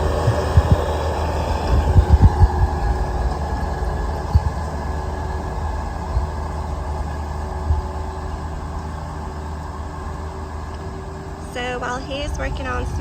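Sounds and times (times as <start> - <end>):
loader diesel engine running: 0.0 - 13.0.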